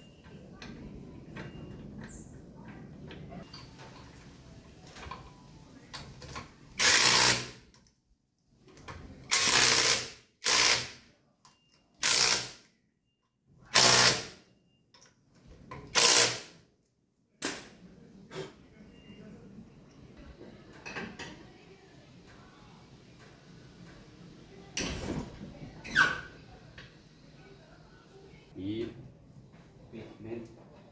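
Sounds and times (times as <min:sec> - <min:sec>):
ratchet wrench clicking: 0:06.8 - 0:07.6, 0:09.3 - 0:10.9.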